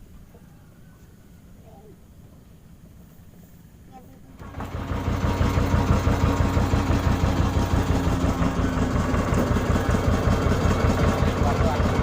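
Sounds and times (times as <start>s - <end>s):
boat engine throbbing: 4.4s - 12.0s.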